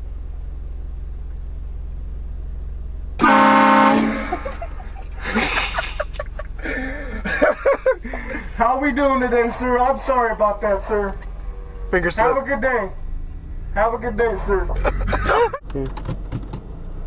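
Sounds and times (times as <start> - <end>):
low steady hum: 0.0 - 15.9
train horn blast: 3.2 - 4.4
voices: 3.7 - 15.9.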